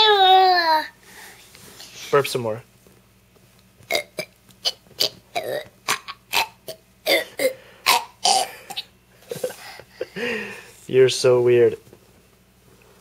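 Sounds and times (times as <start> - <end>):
boy burping: 3.9 - 8.9.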